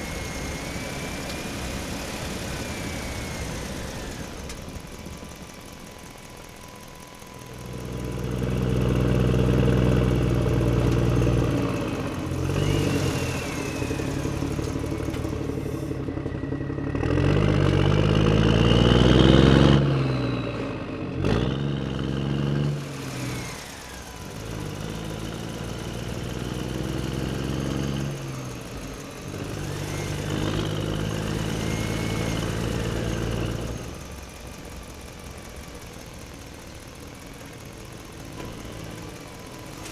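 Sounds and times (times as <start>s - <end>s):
engine revving: 7.6s - 34.4s.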